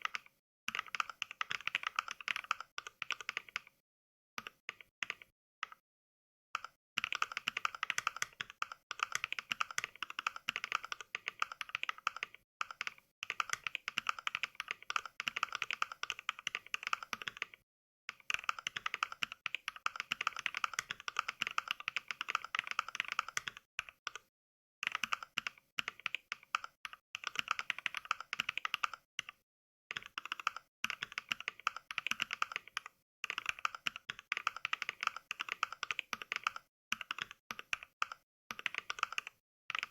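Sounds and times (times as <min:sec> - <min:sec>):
mechanical keyboard clacks: 0:06.6 - 0:17.5, 0:24.8 - 0:39.9.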